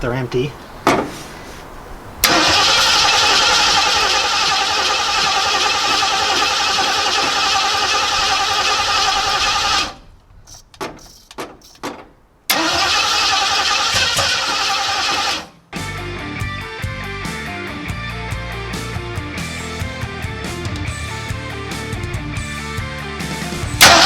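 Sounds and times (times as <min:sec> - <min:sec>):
car engine cranking by starter: 0:02.2 - 0:15.6, 0:23.8 - 0:24.0.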